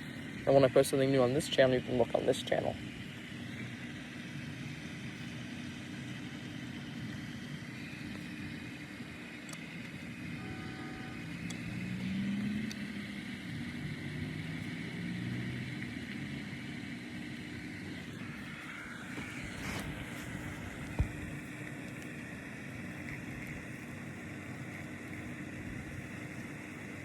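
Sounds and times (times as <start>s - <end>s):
road traffic hum: 0.0s - 27.0s
vehicle passing: 11.3s - 13.2s, 13.8s - 16.5s.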